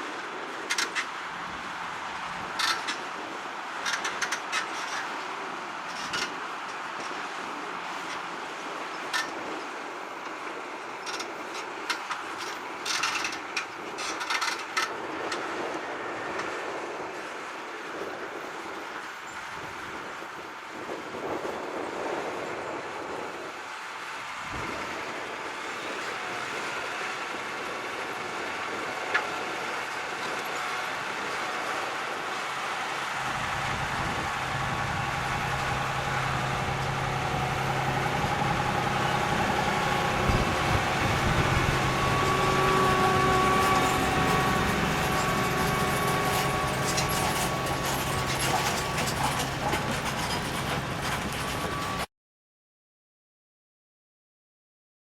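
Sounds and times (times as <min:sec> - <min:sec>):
tractor mechanical hum: 0:24.4 - 0:52.1
low engine drone: 0:24.5 - 0:51.9.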